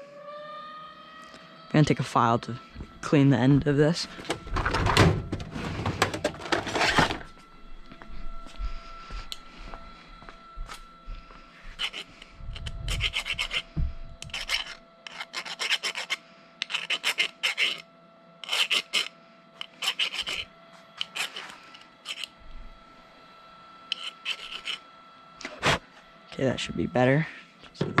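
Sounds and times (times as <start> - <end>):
hand file rasping on metal rod: 11.8 - 12.2, 12.9 - 17.8, 18.4 - 19.1, 19.7 - 22.3, 23.9 - 24.8.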